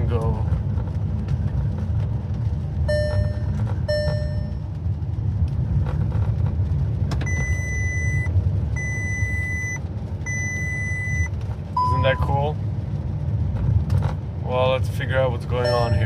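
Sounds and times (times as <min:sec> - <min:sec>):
van engine rumble: 0:00.0 - 0:16.0
low dashboard chimes: 0:02.8 - 0:04.8, 0:07.2 - 0:12.5, 0:15.6 - 0:16.0
high warning beep: 0:02.9 - 0:04.6, 0:07.3 - 0:12.3, 0:15.6 - 0:16.0.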